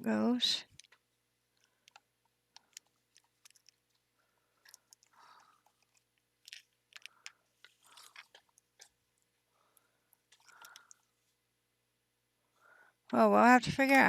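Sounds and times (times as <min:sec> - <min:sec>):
small plastic parts clicking: 0:00.6 - 0:09.0, 0:10.1 - 0:11.1
plastic bag crinkling: 0:01.6 - 0:09.0.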